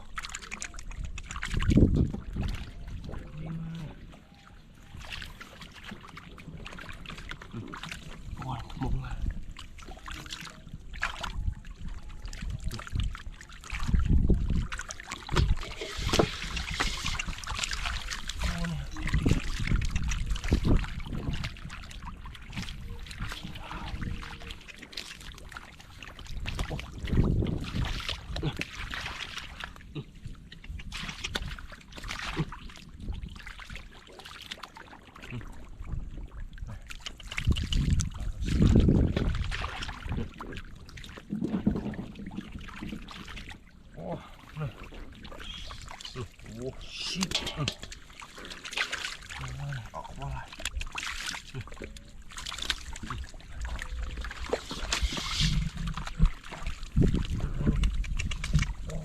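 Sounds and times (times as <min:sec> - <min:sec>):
water sloshing: 0:00.0 - 0:59.0
water splashing and trickling: 0:00.0 - 0:59.0.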